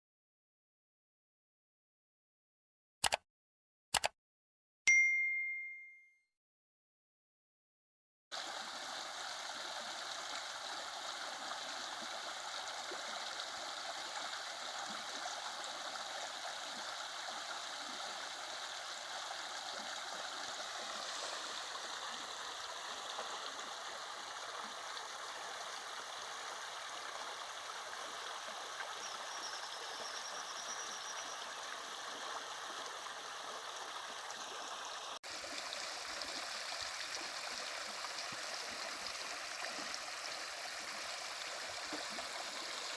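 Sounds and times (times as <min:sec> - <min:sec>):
stream water rushing: 0:08.4 - 0:29.6, 0:31.5 - 0:42.9.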